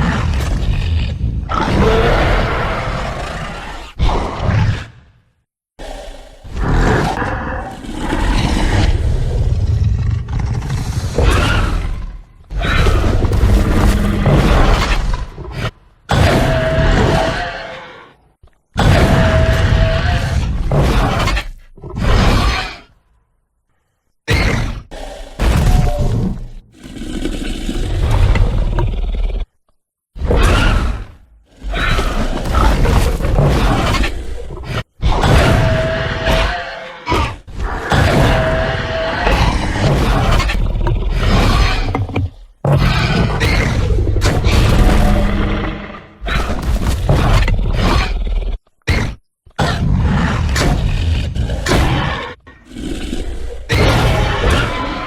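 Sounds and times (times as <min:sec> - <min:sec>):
monster roars with deep rumble: 0:42.7 - 0:48.6.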